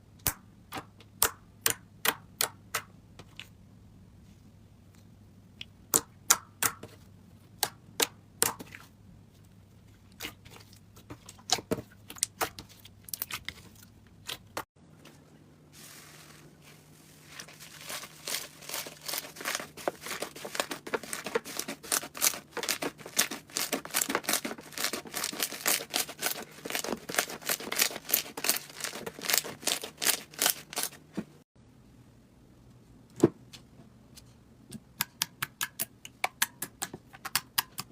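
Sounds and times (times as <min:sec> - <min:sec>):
slime popping and crackling: 0:17.7 - 0:31.0.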